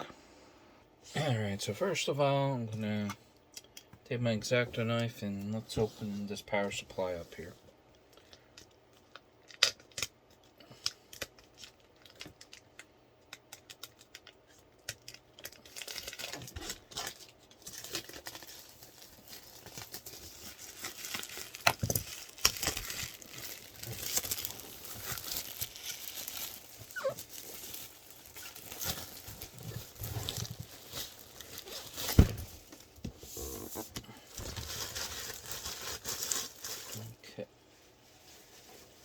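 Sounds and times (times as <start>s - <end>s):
box and packaging rustling: 13.6s - 37.1s.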